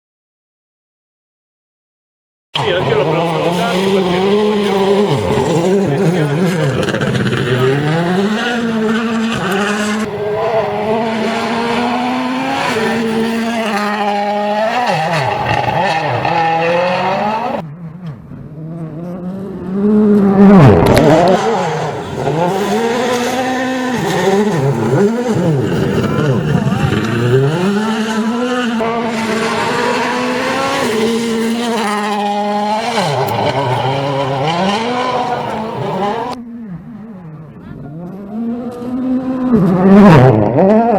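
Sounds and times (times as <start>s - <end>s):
rally car engine revving: 2.6s - 40.9s
car passing close by: 26.6s - 36.4s.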